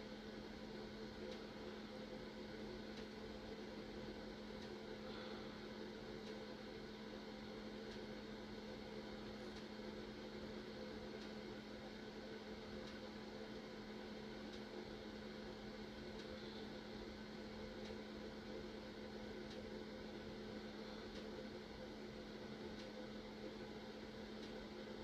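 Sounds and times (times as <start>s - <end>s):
electrical hum: 0.0s - 25.0s
faint ticks: 12.8s - 13.0s.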